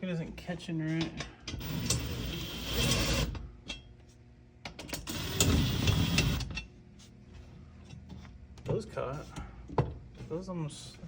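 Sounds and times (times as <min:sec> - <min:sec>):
power drill driving a bolt: 0:01.6 - 0:03.3, 0:05.1 - 0:06.4.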